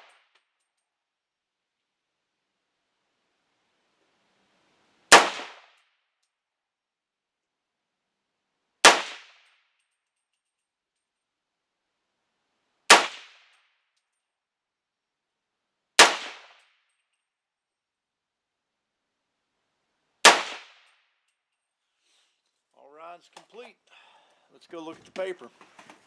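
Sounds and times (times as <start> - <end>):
rifle shots: 5.1 - 5.7, 8.8 - 9.4, 12.9 - 13.4, 16.0 - 16.6, 20.2 - 20.8.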